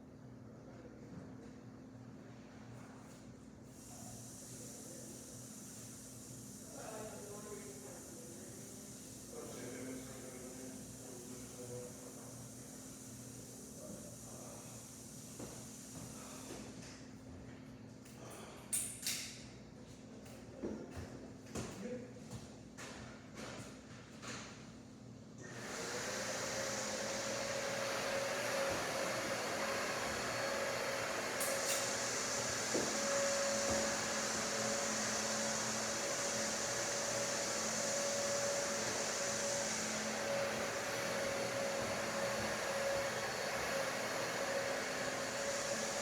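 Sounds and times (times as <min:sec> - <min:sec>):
ceiling fan motor hum: 0:00.0 - 0:46.0
rush of air from fan: 0:25.4 - 0:46.0.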